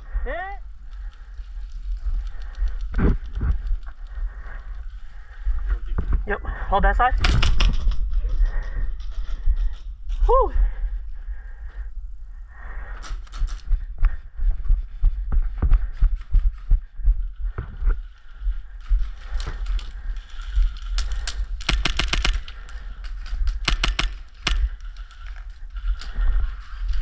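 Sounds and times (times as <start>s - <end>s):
steady low rumble: 0.0s - 27.0s
sharp clicks and rattles: 0.8s - 5.0s, 7.1s - 9.9s, 18.0s - 27.0s.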